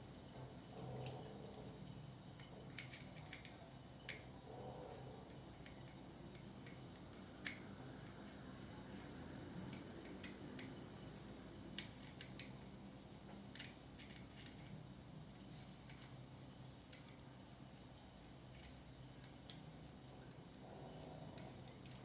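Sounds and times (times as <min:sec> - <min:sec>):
faint high whine: 0:00.0 - 0:22.0
faint plastic clicks: 0:16.9 - 0:19.7.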